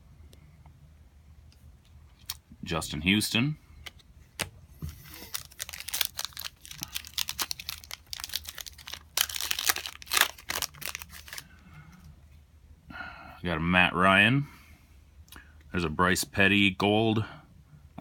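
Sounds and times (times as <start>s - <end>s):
foil wrapper crinkling and tearing: 5.0s - 11.6s.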